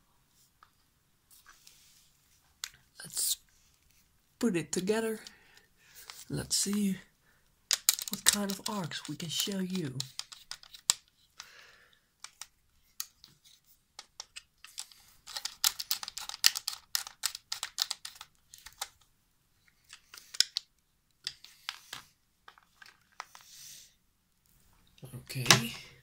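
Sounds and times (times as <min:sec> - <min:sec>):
parts clicking and knocking: 0:07.7 - 0:11.5.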